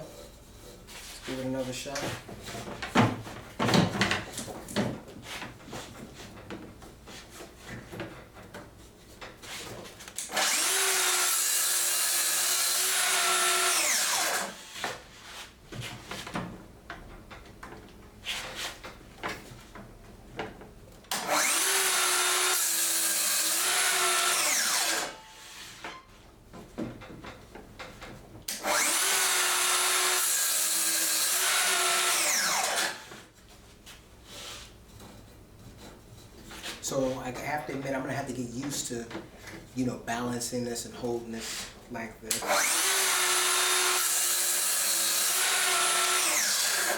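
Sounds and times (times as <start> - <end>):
track saw cutting wood: 10.2 - 15.0, 21.1 - 26.0, 28.5 - 33.2, 42.3 - 46.9.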